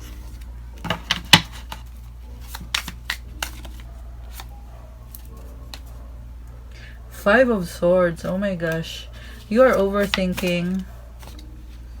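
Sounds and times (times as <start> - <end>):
cards clicking and slapping: 0.0 - 5.9, 9.6 - 11.6.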